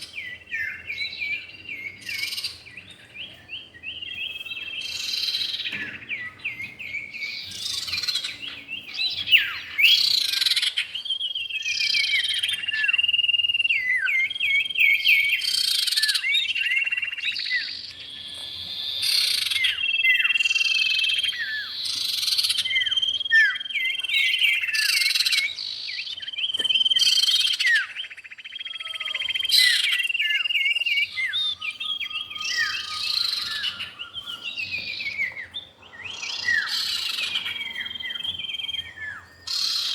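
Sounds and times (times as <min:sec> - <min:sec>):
bird whistling and chattering: 0:18.7 - 0:39.9.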